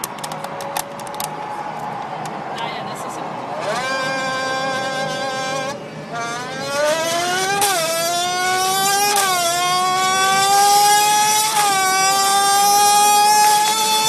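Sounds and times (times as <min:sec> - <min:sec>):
buzzing race car engine imitation: 0:03.2 - 0:14.0.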